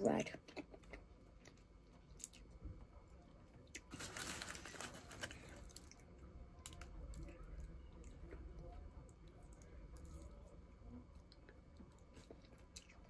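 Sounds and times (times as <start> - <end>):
person chewing sandwich: 3.6 - 13.0
crackly rustle: 3.8 - 6.0.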